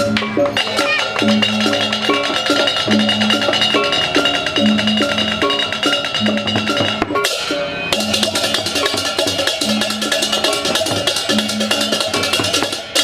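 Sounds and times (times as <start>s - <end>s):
gamelan playing: 0.0s - 13.0s.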